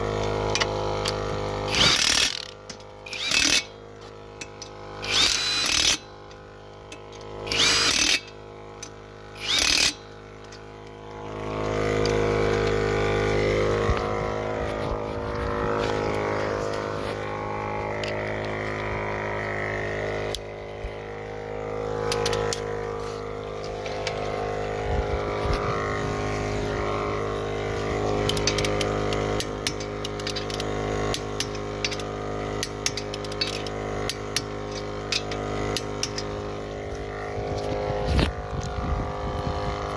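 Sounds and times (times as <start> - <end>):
sharp clicks and knocks: 28.2 - 36.4.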